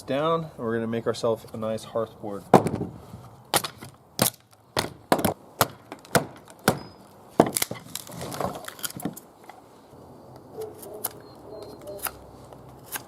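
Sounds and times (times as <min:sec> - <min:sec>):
blade chopping wood: 0:03.5 - 0:09.2
wood scraping: 0:05.8 - 0:09.9.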